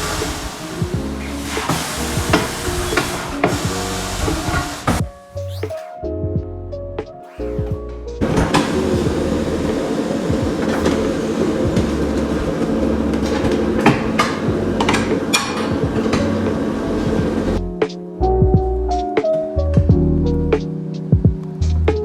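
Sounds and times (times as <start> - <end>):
tyre-fitting machine running: 0.0 - 5.9, 8.2 - 17.6.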